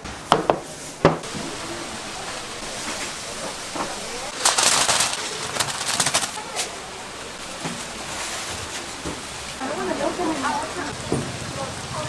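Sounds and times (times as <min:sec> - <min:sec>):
sharp knocks: 0:00.0 - 0:01.6
doughnuts sizzling in hot oil: 0:00.2 - 0:12.0.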